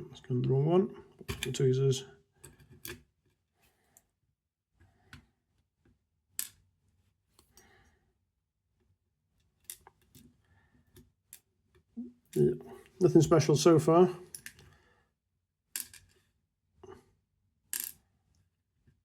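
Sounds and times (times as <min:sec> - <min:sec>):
small metallic clicks: 0:17.7 - 0:18.0.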